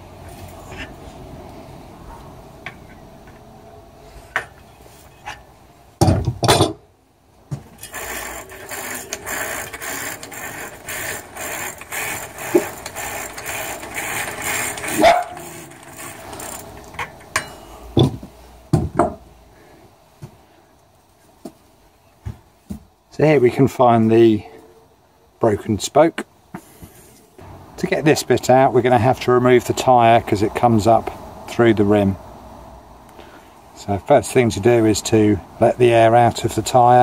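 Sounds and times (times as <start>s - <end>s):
rasping ratchet clicking: 7.8s - 17.4s
loud metal clanks: 7.8s - 18.2s.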